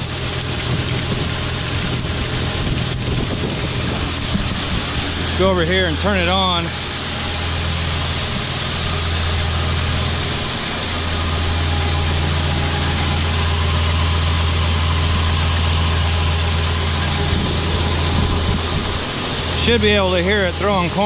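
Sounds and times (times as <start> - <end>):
low machinery hum: 0.0 - 21.0
rushing hiss: 0.0 - 21.0.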